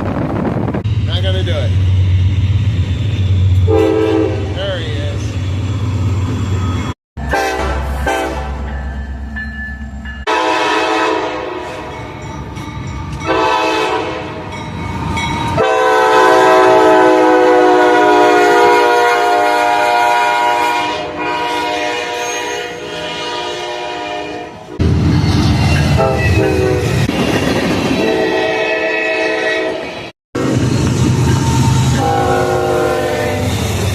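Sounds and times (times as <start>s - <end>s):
train air horn: 3.7s - 4.6s, 7.2s - 8.6s, 10.3s - 11.9s, 13.2s - 14.4s, 15.6s - 24.8s, 26.0s - 27.0s, 28.0s - 29.9s, 31.9s - 33.7s.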